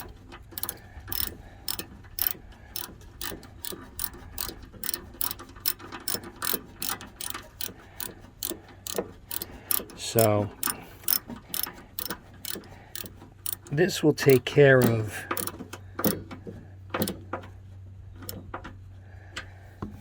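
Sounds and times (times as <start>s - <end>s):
socket ratchet clicking: 0.0s - 16.3s, 17.0s - 17.2s.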